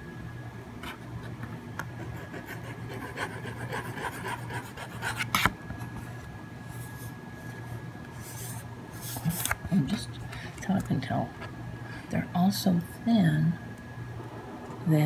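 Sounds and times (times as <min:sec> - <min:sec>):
pen scratching on paper: 0:02.0 - 0:05.5.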